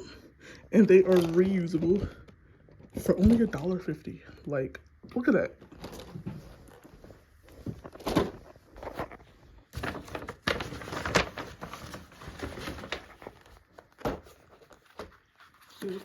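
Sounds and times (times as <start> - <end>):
objects rustling: 5.6 - 16.0.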